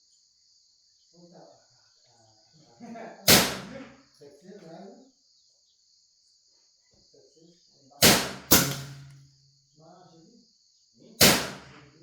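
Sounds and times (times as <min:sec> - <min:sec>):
sharp loud bangs with ringing: 0:03.3 - 0:03.8, 0:08.0 - 0:09.3, 0:11.2 - 0:11.9.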